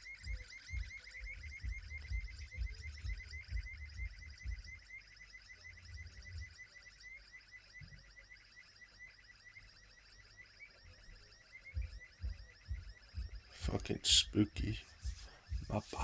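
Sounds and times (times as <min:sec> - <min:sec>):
low thumps: 0:11.8 - 0:16.0.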